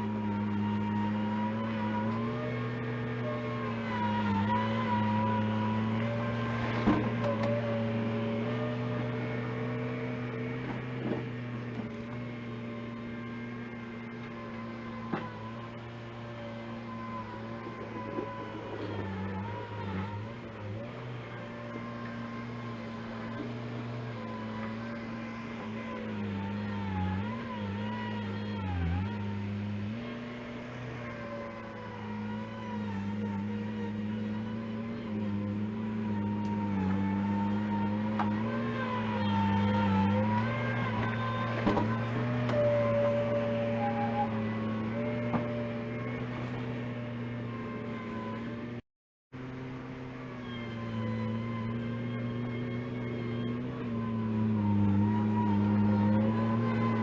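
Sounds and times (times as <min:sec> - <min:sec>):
engine running steadily: 0:00.0 - 0:57.0.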